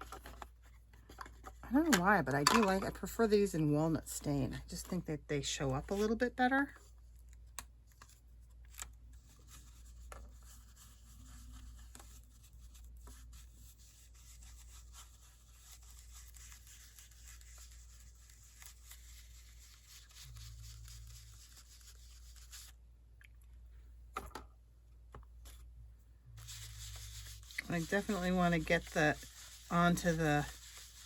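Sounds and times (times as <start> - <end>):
paper rubbing and handling: 7.9 - 22.8, 26.4 - 31.0.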